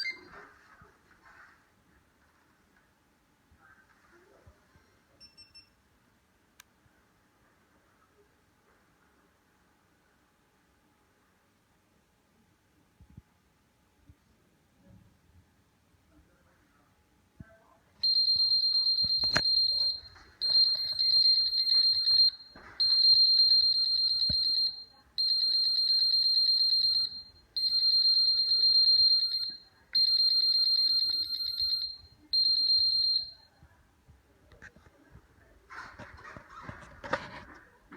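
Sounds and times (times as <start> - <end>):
high-pitched warbling beeps: 0.0 - 0.3.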